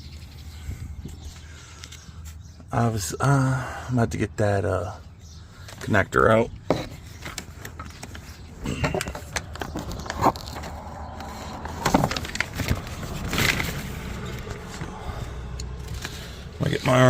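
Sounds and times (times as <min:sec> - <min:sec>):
tools scraping and knocking: 0:06.6 - 0:14.9.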